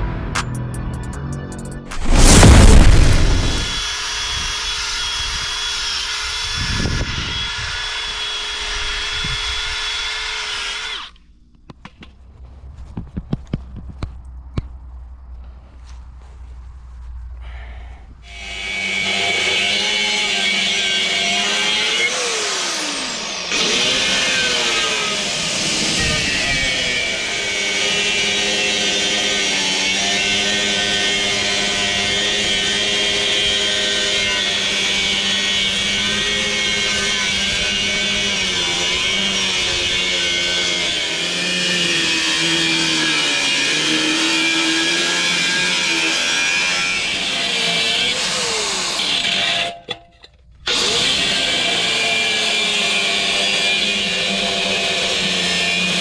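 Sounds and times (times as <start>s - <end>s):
electric power tool running: 3.6s - 11.2s, 18.3s - 49.8s, 50.7s - 56.0s.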